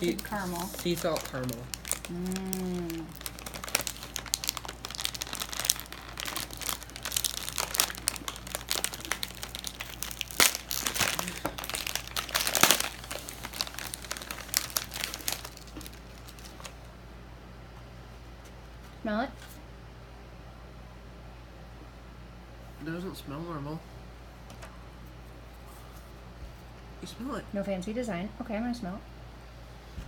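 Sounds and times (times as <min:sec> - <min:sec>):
plastic bag crinkling: 0:00.0 - 0:16.8.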